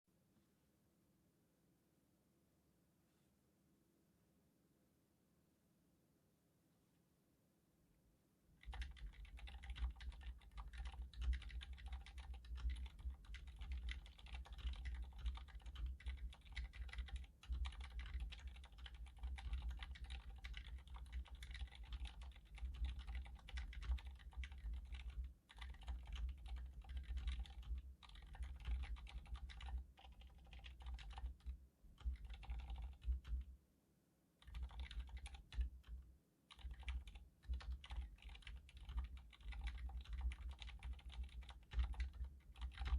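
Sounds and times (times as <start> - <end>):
fast typing on keyboard: 8.6 - 33.5, 34.4 - 42.9.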